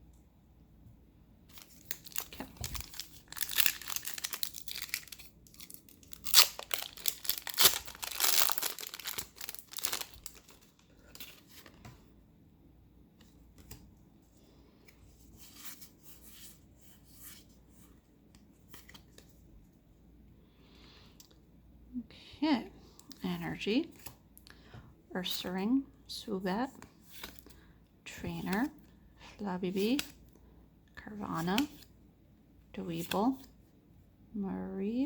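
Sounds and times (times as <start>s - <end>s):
cards clicking and rustling: 1.5s - 11.9s
foil wrapper tearing and crinkling: 1.6s - 11.4s.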